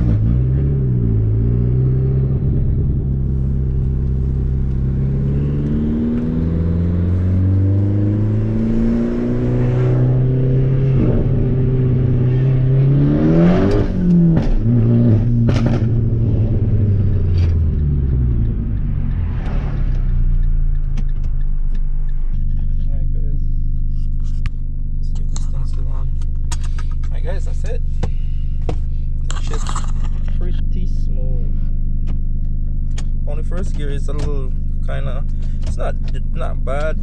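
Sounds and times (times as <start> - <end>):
car engine revving through gears: 0.0 - 22.9.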